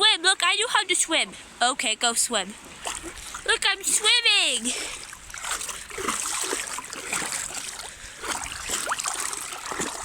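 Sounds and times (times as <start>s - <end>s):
water splashing from swimming: 2.6s - 10.0s.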